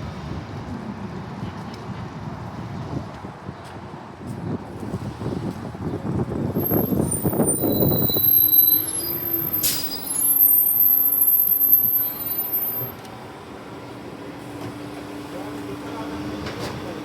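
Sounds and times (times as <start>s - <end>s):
bus engine and tyre rumble: 0.0s - 17.0s
air suspension venting hiss: 6.6s - 12.9s
air-brake hiss: 6.6s - 12.9s
high brake squeals: 6.6s - 13.0s.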